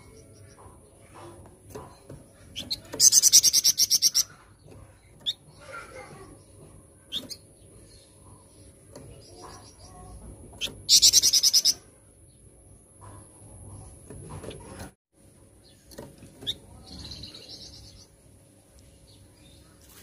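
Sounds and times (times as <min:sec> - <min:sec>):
songbird rattling trills: 0:01.9 - 0:11.8.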